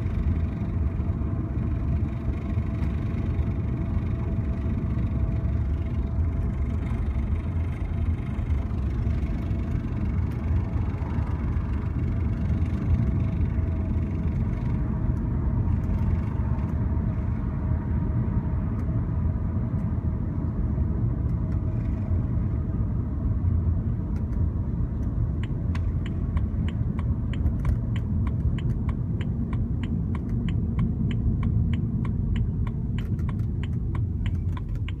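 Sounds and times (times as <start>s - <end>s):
car road and engine rumble: 0.0s - 35.0s
regular ticking: 25.0s - 35.0s.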